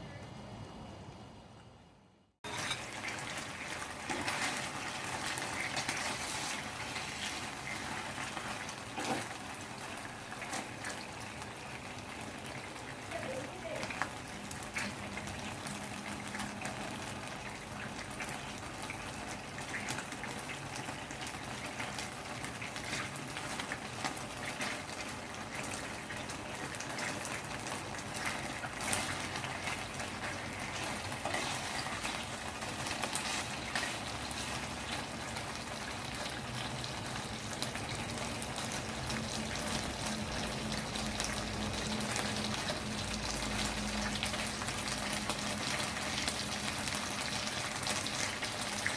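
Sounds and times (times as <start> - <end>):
food sizzling in a pan: 2.4 - 48.9.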